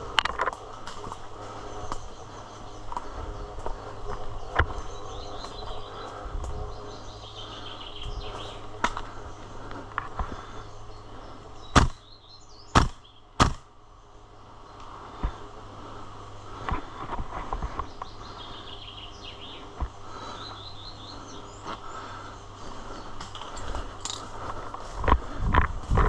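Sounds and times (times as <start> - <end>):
airsoft gun shots: 11.8 - 12.0, 12.7 - 13.7.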